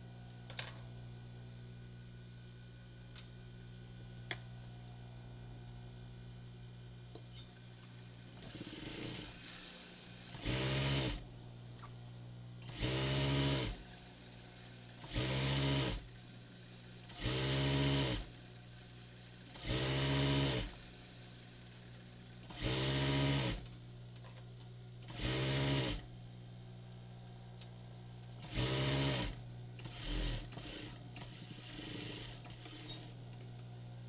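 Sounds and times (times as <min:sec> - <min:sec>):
steady low hum: 0:00.0 - 0:15.0, 0:20.6 - 0:34.0
sewing machine stitching: 0:08.4 - 0:09.5, 0:10.3 - 0:11.2, 0:12.6 - 0:13.8, 0:15.0 - 0:16.1, 0:17.1 - 0:18.3, 0:19.5 - 0:20.8, 0:22.5 - 0:23.7, 0:25.1 - 0:26.0, 0:28.4 - 0:33.1.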